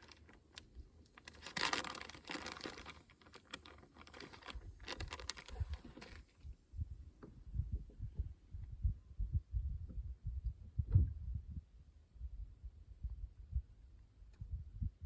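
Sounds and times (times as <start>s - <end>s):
plastic packet crinkling: 0.0s - 6.3s
dull low thumps: 6.4s - 15.0s.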